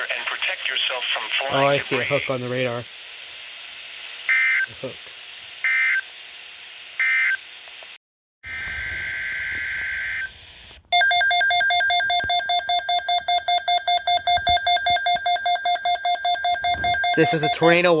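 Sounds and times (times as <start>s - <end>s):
pulsing electronic alert tone: 11.0s - 17.9s
short digital beep: 11.0s - 17.9s
buzzing data burst: 14.6s - 17.9s.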